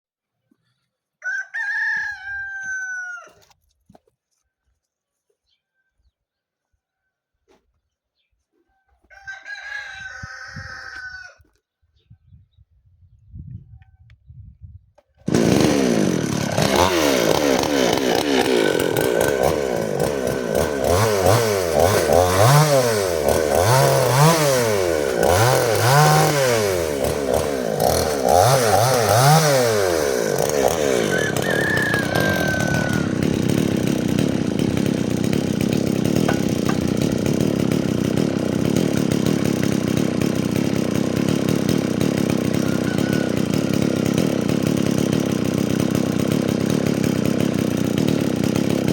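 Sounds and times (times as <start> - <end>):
chainsaw engine revving: 15.3 - 48.9.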